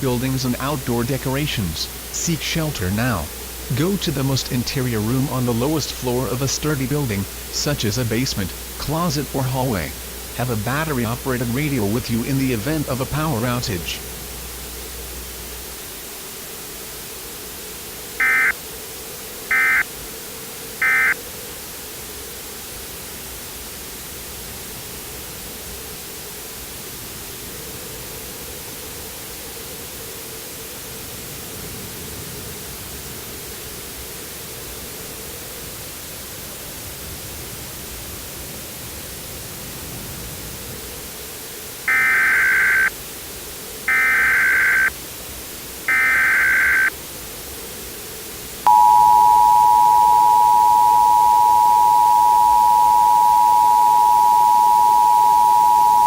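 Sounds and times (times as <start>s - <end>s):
radio static: 0.0s - 15.6s, 41.9s - 42.9s, 43.9s - 44.9s, 45.9s - 46.9s, 48.7s - 56.0s
faint low hum: 0.0s - 18.7s, 48.7s - 56.0s
warbling data tones: 18.2s - 18.6s, 41.9s - 42.9s, 43.9s - 44.9s, 45.9s - 46.9s, 48.7s - 56.0s.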